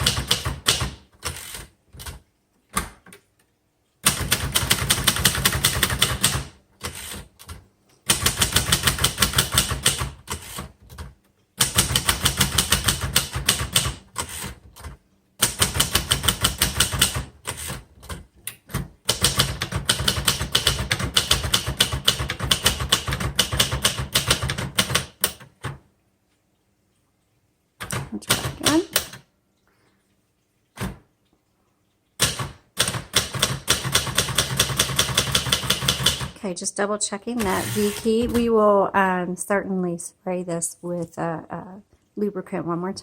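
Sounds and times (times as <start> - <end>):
typewriter key strikes: 0.0 - 2.2, 4.0 - 11.0, 11.6 - 14.6, 15.4 - 18.2, 19.0 - 25.5, 32.2 - 36.4.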